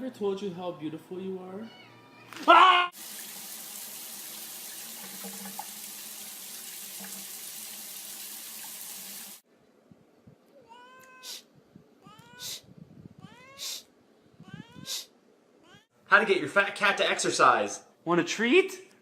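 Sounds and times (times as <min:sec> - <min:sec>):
cat meowing: 0:01.6 - 0:02.9, 0:10.6 - 0:11.4, 0:12.0 - 0:12.6, 0:13.2 - 0:13.8, 0:14.4 - 0:15.9
running water hissing: 0:02.9 - 0:09.4.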